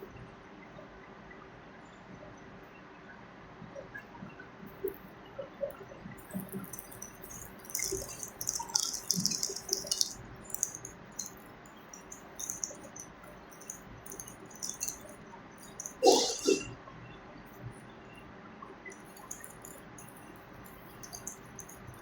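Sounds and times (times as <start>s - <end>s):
water splashing: 6.2s - 16.6s, 18.9s - 22.0s
kitchen clinks and taps: 6.6s - 16.0s.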